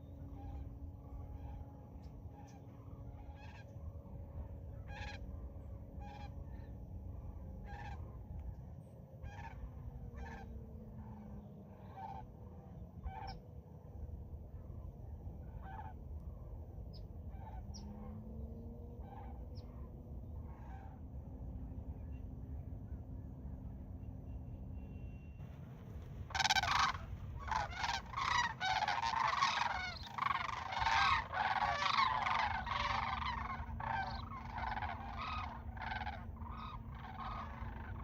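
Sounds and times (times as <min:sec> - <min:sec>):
geese honking: 0:00.0 - 0:08.5, 0:09.2 - 0:13.4, 0:15.4 - 0:16.0, 0:19.0 - 0:19.8, 0:20.5 - 0:21.0, 0:26.3 - 0:38.0
steady low rumble: 0:00.0 - 0:38.0.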